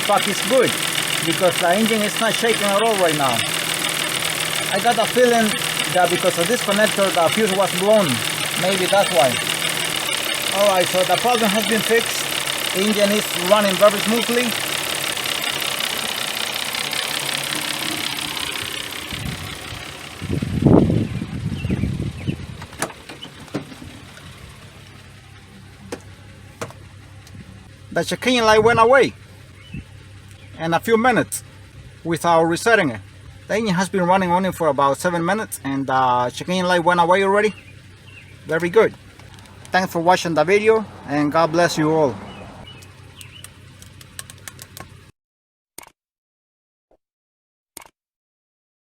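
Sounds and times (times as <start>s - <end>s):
sharp ticks: 0.0s - 18.8s, 42.8s - 44.8s
car engine idling: 0.0s - 45.1s
sharp clicks: 42.8s - 45.0s, 47.8s - 48.0s
short clicks: 45.8s - 46.0s, 47.8s - 48.0s.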